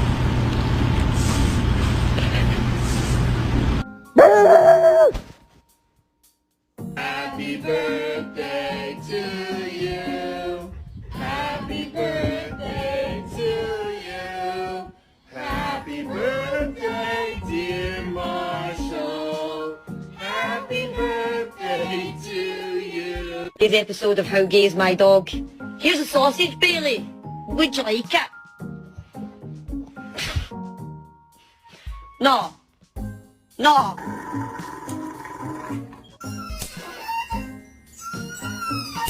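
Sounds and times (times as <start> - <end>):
loud pitched cry: 4.2 - 5.2
music with singing: 6.8 - 23.6.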